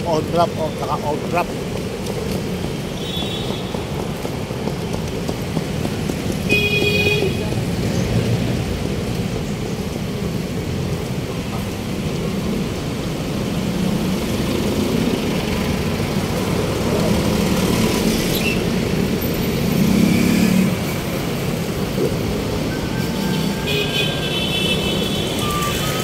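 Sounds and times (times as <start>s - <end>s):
city road traffic: 0.0s - 26.0s
vehicle passing loudly: 13.7s - 23.7s.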